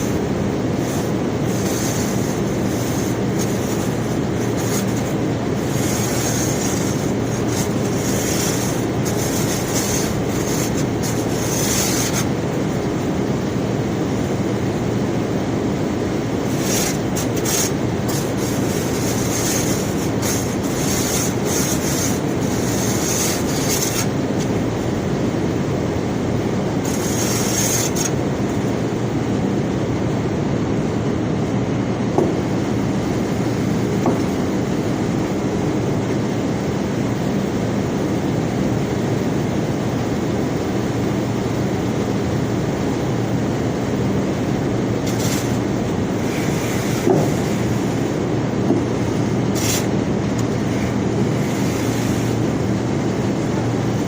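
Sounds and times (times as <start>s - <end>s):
conveyor belt rumbling: 0.0s - 54.0s
high squeals and scrapes: 0.8s - 12.3s, 16.5s - 24.2s, 26.8s - 28.2s.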